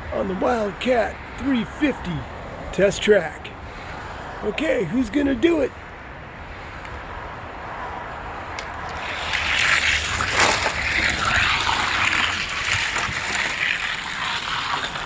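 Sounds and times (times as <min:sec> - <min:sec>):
toy cars rolling down plastic track: 0:08.9 - 0:15.0.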